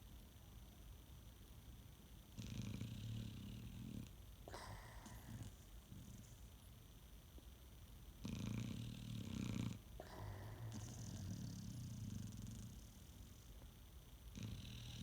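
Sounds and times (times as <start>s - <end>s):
dog snoring: 2.3s - 6.6s, 8.2s - 13.6s, 14.3s - 15.0s.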